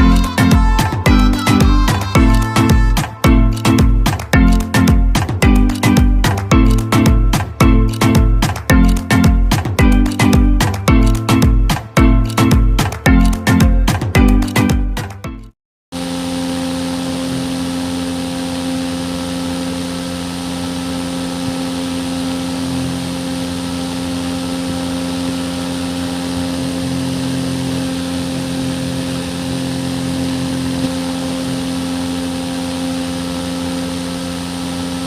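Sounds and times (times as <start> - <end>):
small motor humming: 0.0 - 3.8, 16.0 - 35.0.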